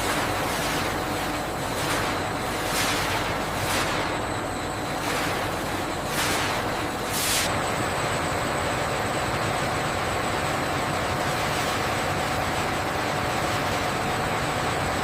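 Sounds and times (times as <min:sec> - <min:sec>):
faint continuous whine: 0:00.0 - 0:15.0
industrial machinery noise: 0:00.0 - 0:15.0.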